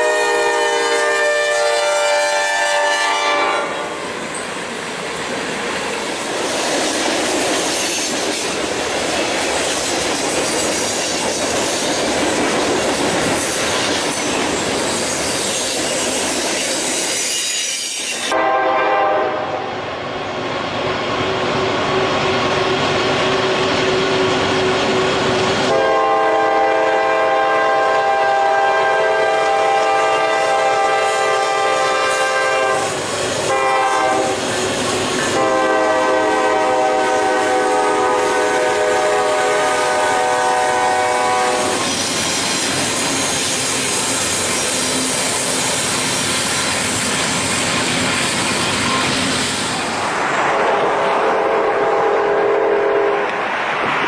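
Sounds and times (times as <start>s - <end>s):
long horn chord: 0.0s - 3.9s, 18.3s - 19.7s, 25.7s - 32.9s, 33.5s - 34.4s, 35.4s - 41.7s
loud steady rushing noise: 41.5s - 54.0s.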